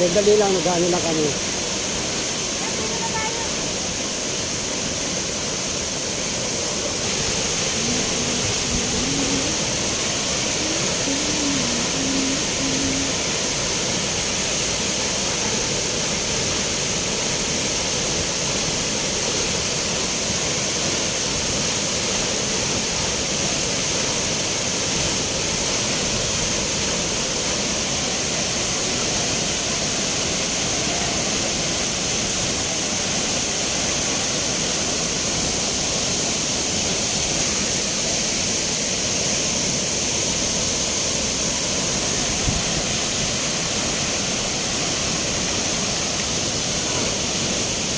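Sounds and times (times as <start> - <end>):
spring water rushing: 0.0 - 47.9.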